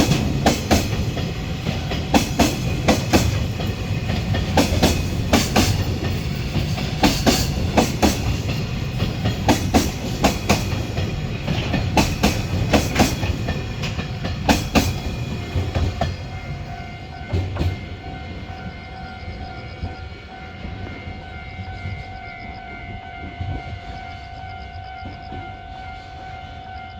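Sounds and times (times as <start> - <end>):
train wheels clacking over rail joints: 0.0 - 18.5
low train rumble: 0.0 - 26.9.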